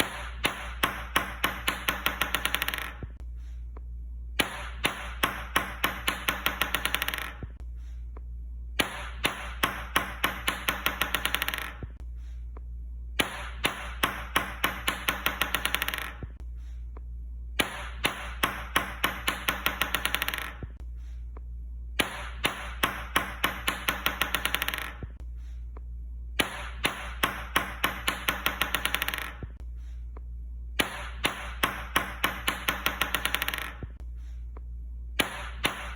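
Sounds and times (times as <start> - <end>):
ping-pong ball bouncing: 0.0 - 3.2, 4.4 - 7.6, 8.8 - 12.0, 13.2 - 16.4, 17.6 - 20.8, 22.0 - 25.2, 26.4 - 29.6, 30.8 - 34.0, 35.2 - 35.9
low steady hum: 0.0 - 35.9.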